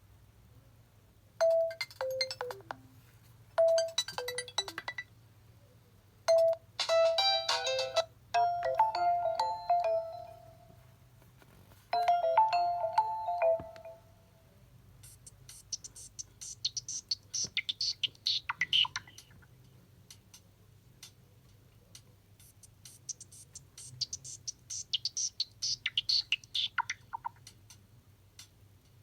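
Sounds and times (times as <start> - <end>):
bell-like ringtone melody: 1.4 - 2.7, 3.6 - 5.0, 6.3 - 10.8, 12.0 - 14.2.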